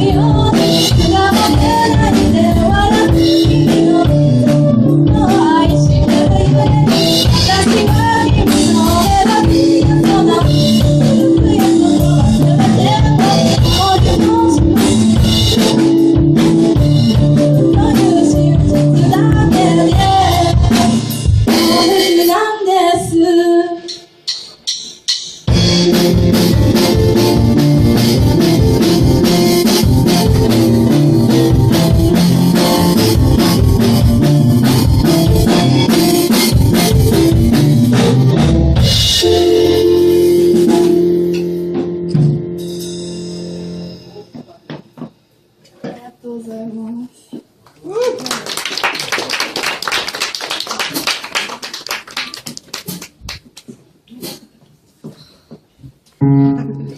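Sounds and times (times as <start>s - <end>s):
person singing: 0.0s - 14.9s, 17.5s - 24.0s
band playing pop-rock song: 0.0s - 22.2s, 25.5s - 44.2s.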